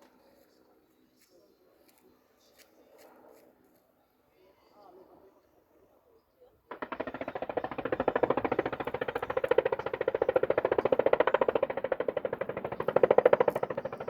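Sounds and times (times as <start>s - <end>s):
helicopter rotor blades beating: 6.7s - 14.0s.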